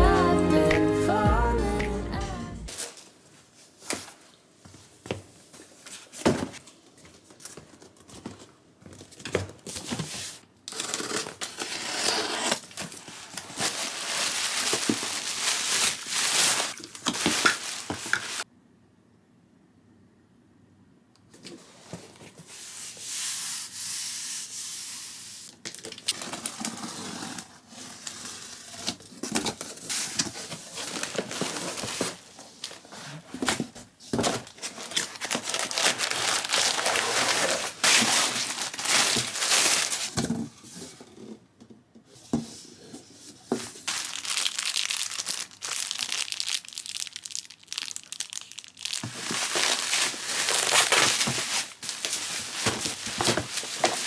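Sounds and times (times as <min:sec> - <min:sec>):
wrapping crinkling and tearing: 0:10.7 - 0:18.5, 0:28.0 - 0:33.5, 0:34.3 - 0:40.2, 0:43.8 - 0:54.0.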